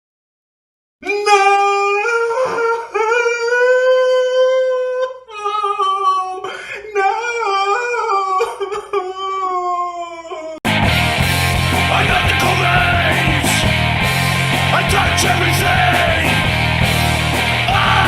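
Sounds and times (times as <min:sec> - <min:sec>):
person singing unaccompanied: 0:11.8 - 0:13.8, 0:14.6 - 0:16.5, 0:17.6 - 0:18.0.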